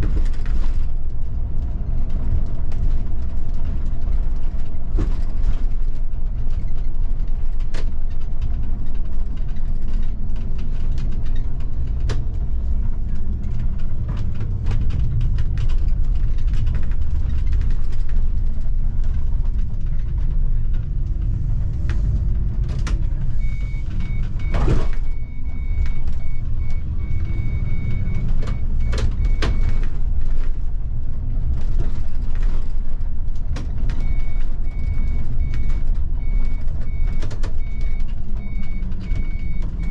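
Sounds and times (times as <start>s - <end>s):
clicks and rattles: 0.0s - 39.8s
bus engine rumble: 0.0s - 39.9s
high electronic beeps: 23.4s - 29.8s.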